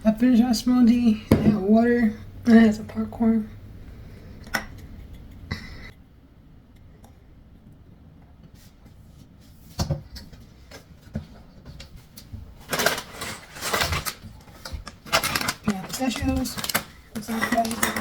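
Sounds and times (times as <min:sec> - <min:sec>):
plastic snack bag crinkling: 0:12.6 - 0:17.8.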